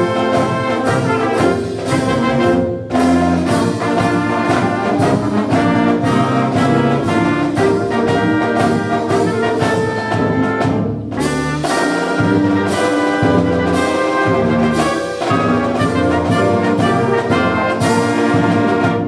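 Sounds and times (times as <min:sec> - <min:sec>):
brass-led orchestral music: 0:00.0 - 0:19.0.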